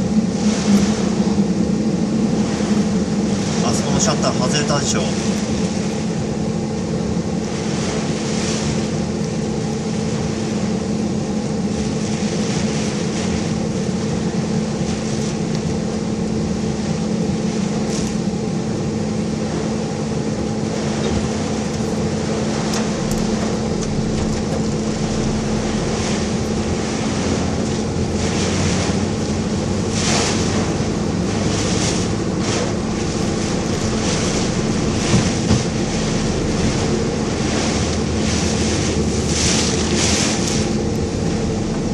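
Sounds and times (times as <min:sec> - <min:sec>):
car engine and road drone: 0:00.0 - 0:41.9
storm wind: 0:00.0 - 0:41.9
rain on car body: 0:32.4 - 0:40.0.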